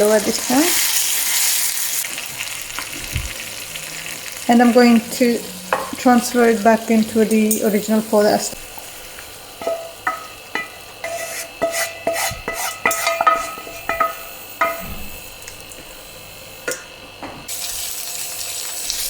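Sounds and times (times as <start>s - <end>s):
frying hiss: 0.0s - 19.0s
metal utensil clinking on pan: 7.2s - 7.9s, 9.6s - 14.9s.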